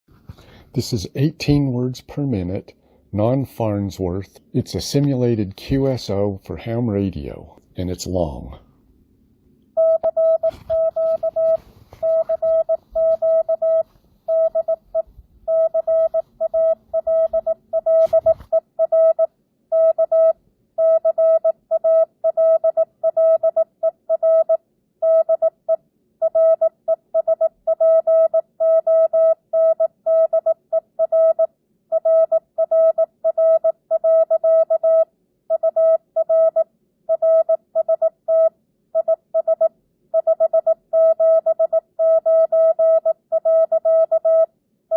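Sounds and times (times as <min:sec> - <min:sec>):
faint low background noise: 0:00.2 - 0:23.1
morse code tone: 0:09.8 - 0:44.5.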